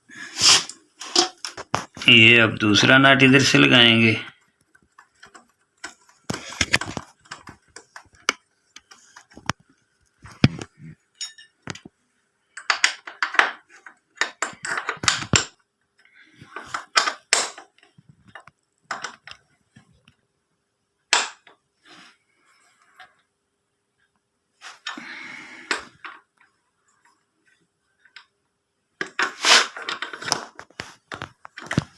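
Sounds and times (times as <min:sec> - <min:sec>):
metal tools clinking and scraping: 0:11.2 - 0:11.6.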